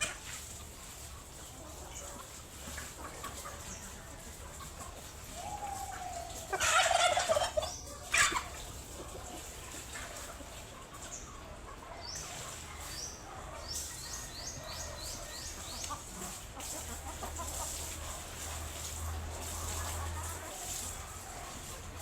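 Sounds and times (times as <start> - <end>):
chickens calling: 0.0 - 22.0.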